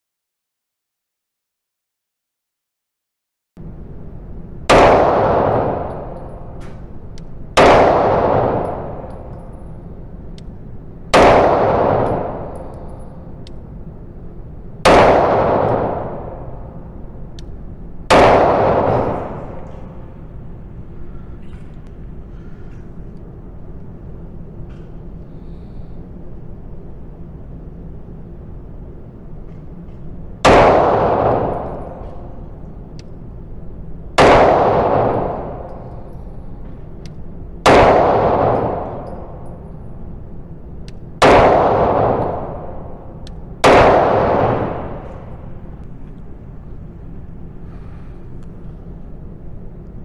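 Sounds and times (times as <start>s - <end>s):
pistol shots echoing: 4.7s - 6.8s, 7.5s - 9.4s, 11.1s - 13.0s, 14.8s - 16.9s, 18.1s - 20.0s, 30.4s - 32.5s, 34.2s - 36.1s, 37.6s - 39.6s, 41.2s - 45.4s.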